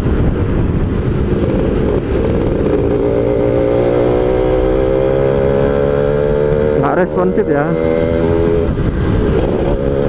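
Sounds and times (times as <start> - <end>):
motorcycle engine at full throttle: 0.0 - 10.0
wind buffeting microphone: 0.0 - 10.0.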